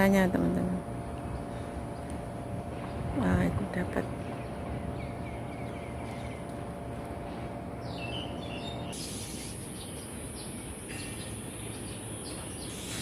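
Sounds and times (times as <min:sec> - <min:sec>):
steady high whine: 0:00.0 - 0:13.0
wild birds chirping: 0:00.8 - 0:13.0.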